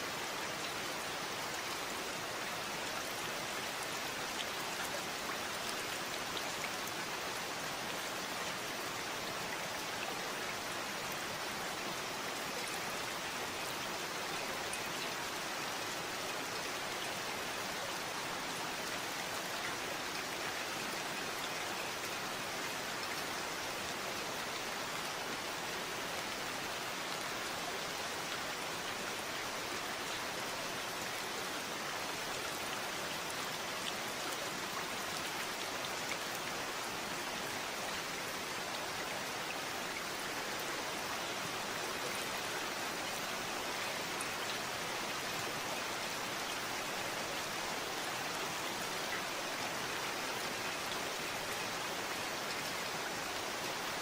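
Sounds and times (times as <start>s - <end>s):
steady rainfall: 0.0s - 54.0s.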